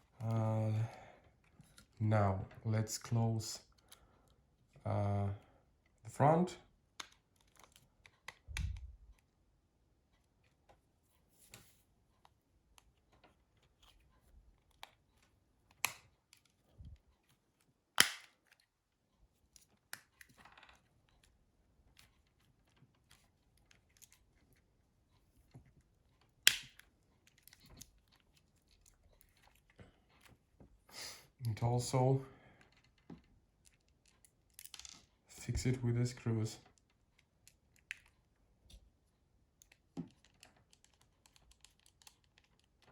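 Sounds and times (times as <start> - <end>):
sharp plastic clicks: 18.0 - 18.6.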